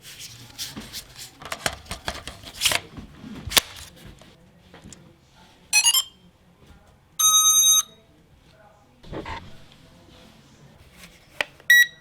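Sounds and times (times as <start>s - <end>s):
electronic beep: 5.8s - 6.2s, 7.2s - 7.9s.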